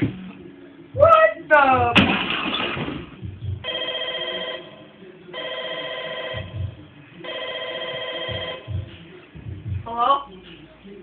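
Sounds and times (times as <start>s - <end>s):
soft low thumps: 2.8s - 3.7s, 6.4s - 6.9s, 8.2s - 10.1s
telephone ringing: 3.6s - 8.8s.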